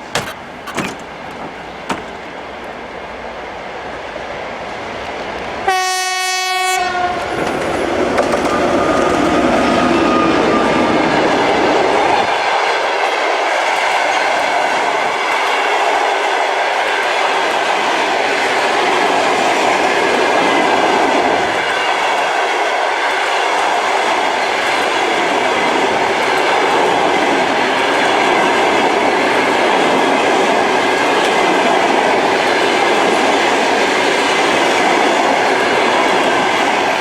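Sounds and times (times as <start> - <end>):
train wheels clattering on rails: 0.0 - 2.9, 7.2 - 10.5
locomotive horn blast: 5.6 - 7.3.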